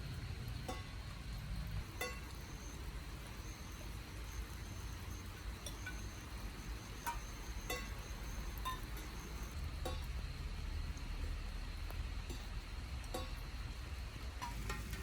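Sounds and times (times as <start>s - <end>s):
steady low rumble: 0.0s - 5.6s
rain dripping on hard surfaces: 0.0s - 15.0s.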